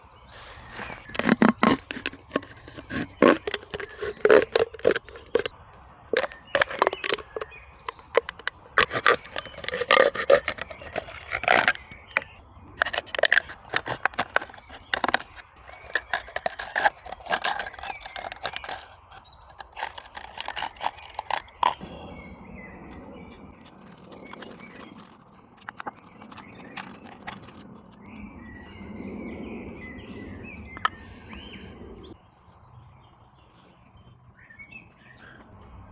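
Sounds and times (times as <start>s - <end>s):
scrapes: 0.4s - 5.5s, 6.1s - 21.8s, 23.3s - 28.0s.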